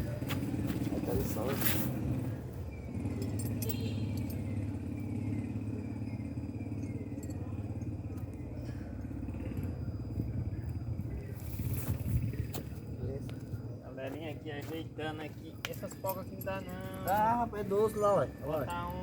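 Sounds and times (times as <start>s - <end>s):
motorcycle engine idling: 0.0s - 14.0s.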